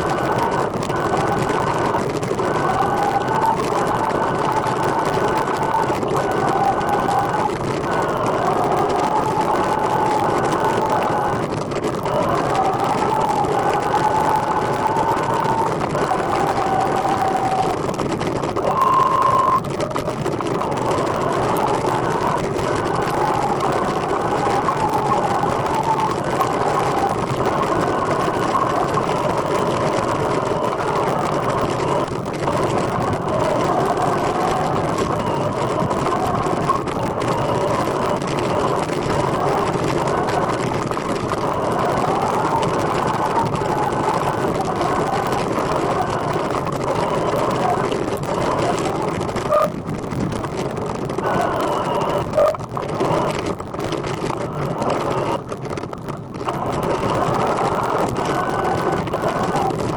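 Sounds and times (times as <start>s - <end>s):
faint wavering whine: 0.0s - 49.8s, 50.6s - 53.6s
trike wheels rolling: 0.0s - 59.9s.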